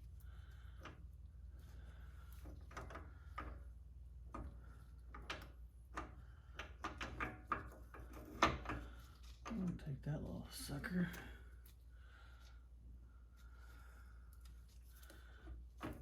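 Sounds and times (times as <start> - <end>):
low steady hum: 0.0 - 16.0.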